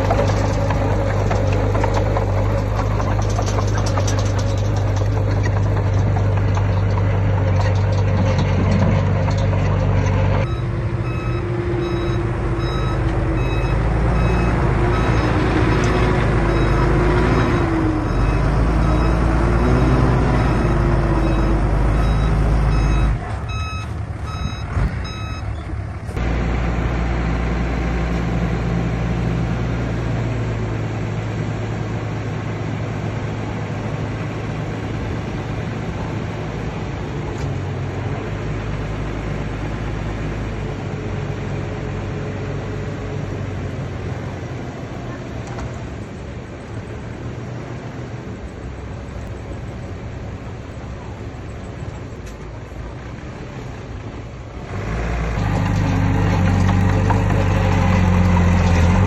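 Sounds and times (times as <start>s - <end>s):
diesel engine running: 0.0s - 59.0s
back-up alarm beeping: 10.5s - 15.4s, 16.5s - 25.6s.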